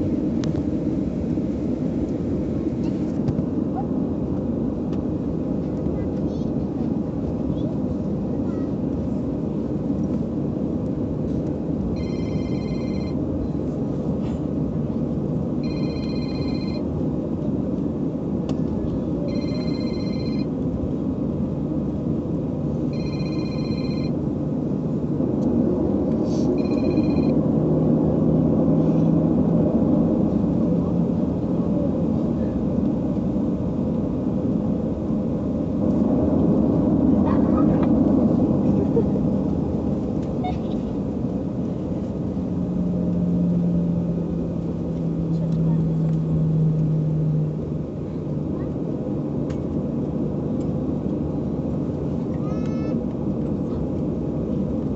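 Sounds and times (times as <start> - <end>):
airliner cabin rumble: 0.0 - 54.9
electronic ringtone: 12.0 - 13.2, 15.6 - 16.8, 19.3 - 20.5, 22.9 - 24.2, 26.6 - 27.4.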